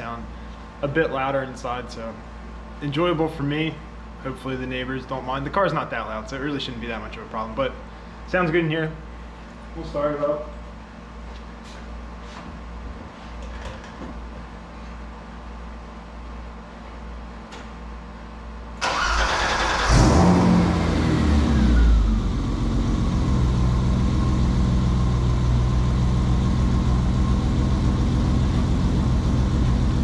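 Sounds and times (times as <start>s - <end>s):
starter motor cranking: 18.8s - 20.3s
car engine starting and idling: 18.8s - 30.0s.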